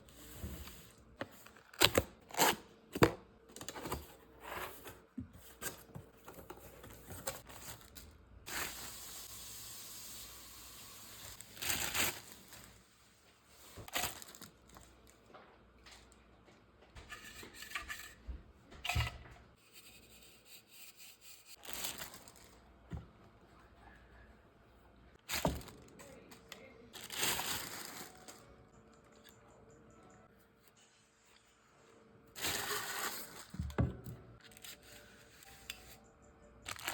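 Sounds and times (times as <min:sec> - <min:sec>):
cardboard box and packaging handled: 0:00.3 - 0:08.0.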